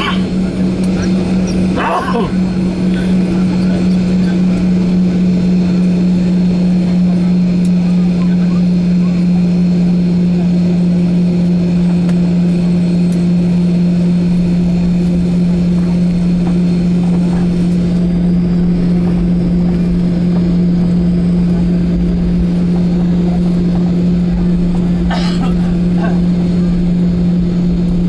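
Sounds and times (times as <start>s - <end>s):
engine and air-system noise: 0.0s - 5.0s
low cabin hum: 0.0s - 28.0s.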